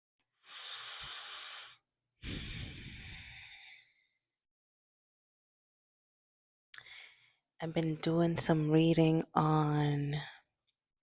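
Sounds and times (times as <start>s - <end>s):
person breathing in: 0.4s - 4.2s, 6.8s - 7.4s.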